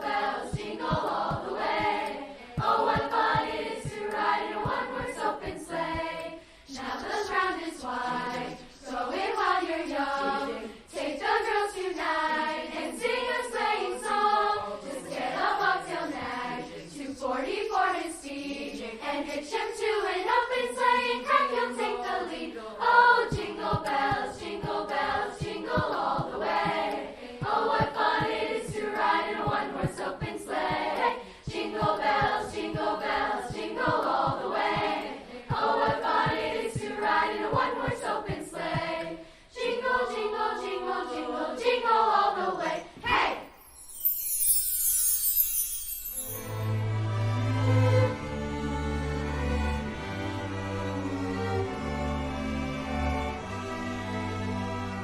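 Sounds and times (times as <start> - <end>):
soft steady beat: 0.0 - 6.3, 23.3 - 39.1
choir singing: 0.0 - 55.0.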